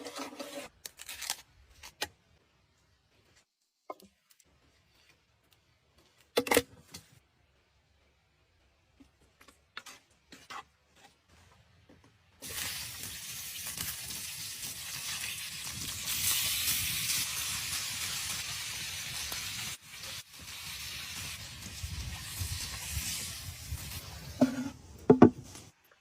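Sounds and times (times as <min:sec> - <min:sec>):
food sizzling in a pan: 0:12.4 - 0:24.6.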